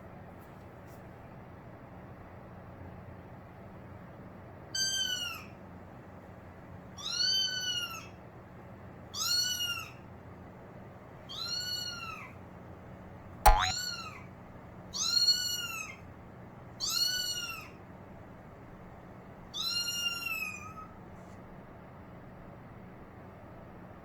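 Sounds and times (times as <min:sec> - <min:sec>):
brief sharp sound: 0:13.5 - 0:13.7.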